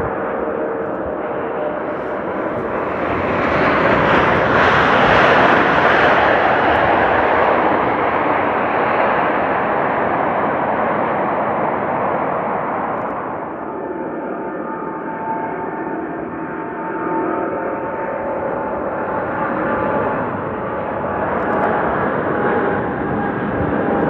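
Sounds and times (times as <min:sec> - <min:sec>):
jet airliner landing: 0:00.0 - 0:24.0.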